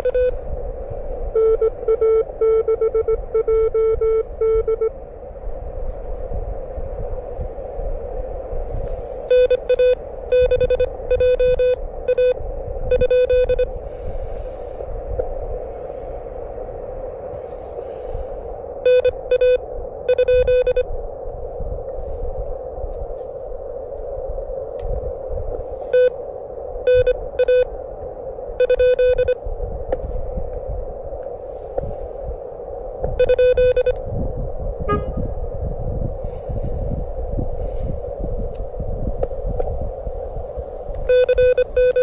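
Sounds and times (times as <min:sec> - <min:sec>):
morse code tone: 0:00.0 - 0:00.4, 0:01.4 - 0:04.9, 0:09.3 - 0:13.7, 0:18.8 - 0:20.9, 0:26.9 - 0:27.7, 0:28.6 - 0:29.4, 0:33.2 - 0:34.0, 0:41.0 - 0:42.0
wind rumble on microphone: 0:00.0 - 0:42.0
radio band noise hiss: 0:08.4 - 0:34.3.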